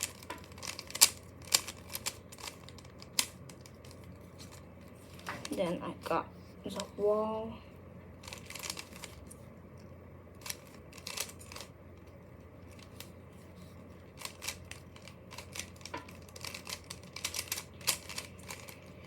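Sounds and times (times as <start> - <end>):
rubik's cube clicking: 0.0 - 4.0, 8.2 - 9.2, 10.4 - 11.7, 14.2 - 18.8.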